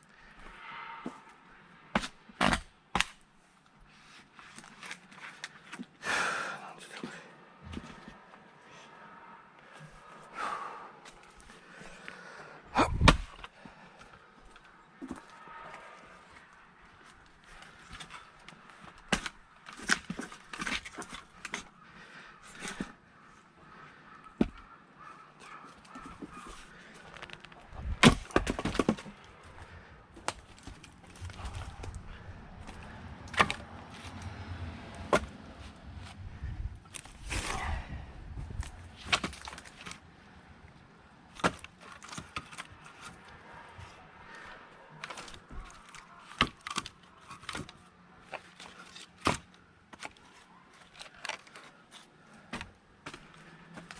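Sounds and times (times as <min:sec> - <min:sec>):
axe splitting firewood: 0:01.9 - 0:03.3, 0:12.8 - 0:15.3, 0:17.5 - 0:21.7, 0:25.4 - 0:34.3, 0:35.0 - 0:35.4, 0:38.5 - 0:40.0, 0:41.3 - 0:43.3, 0:44.4 - 0:50.2
wood clattering: 0:25.9 - 0:29.3.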